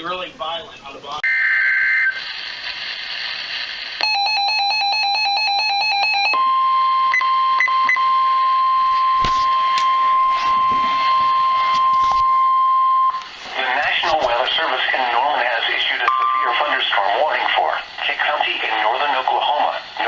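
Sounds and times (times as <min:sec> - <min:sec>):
electronic alarm rapid beeps: 0:04.0 - 0:13.2, 0:16.1 - 0:16.6
steady warning alarm tone: 0:04.0 - 0:13.2.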